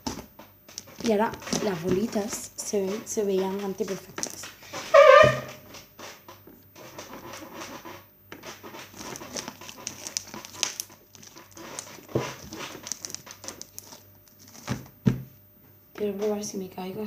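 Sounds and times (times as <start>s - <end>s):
slime squishing by hand: 8.4s - 14.8s.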